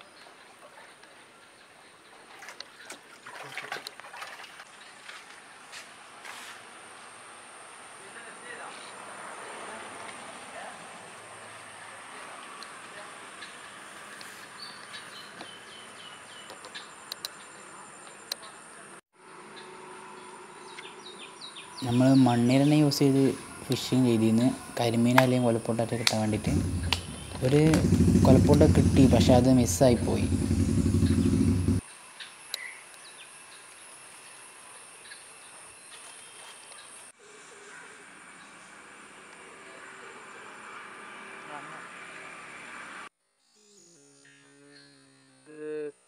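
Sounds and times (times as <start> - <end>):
insects buzzing: 21.8 - 36.4
sharp clicks: 26.0 - 28.7
loud low rumble: 26.2 - 31.8.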